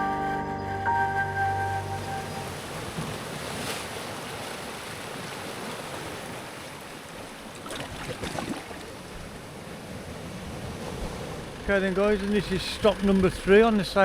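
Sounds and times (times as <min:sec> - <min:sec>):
sea waves washing on shore: 0:01.9 - 0:12.4.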